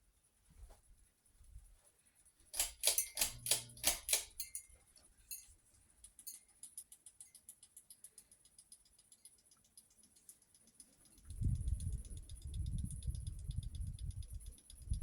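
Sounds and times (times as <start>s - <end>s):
loud clicks: 2.5s - 4.6s
quick regular ticking: 2.5s - 4.7s, 5.3s - 15.0s.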